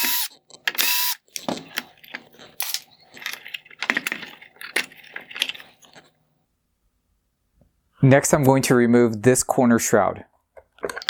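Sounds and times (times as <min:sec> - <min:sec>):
screwdriver removing screws: 0:00.0 - 0:05.5
screws being handled: 0:00.0 - 0:06.1.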